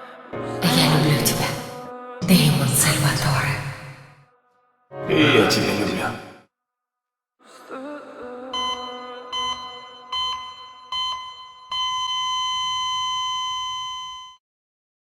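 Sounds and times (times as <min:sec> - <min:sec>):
heart monitor beeping: 0:08.6 - 0:14.4
heart monitor flatline tone: 0:08.6 - 0:14.4.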